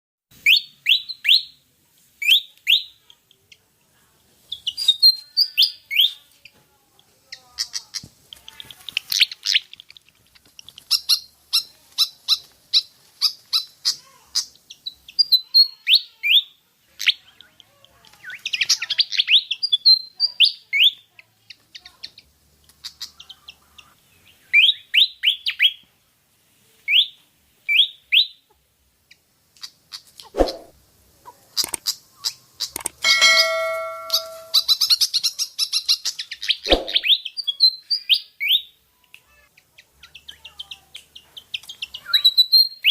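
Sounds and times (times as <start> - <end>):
bird singing whistled notes: 36.5 - 38.7, 42.0 - 42.9.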